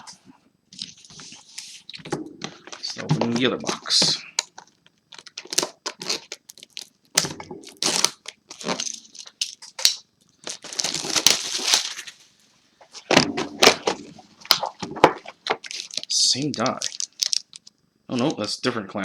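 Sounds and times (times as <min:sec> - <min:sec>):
plastic wrap crackling: 0:02.4 - 0:12.3, 0:13.6 - 0:17.8
packaging tearing rustle: 0:03.7 - 0:12.3, 0:15.6 - 0:17.7.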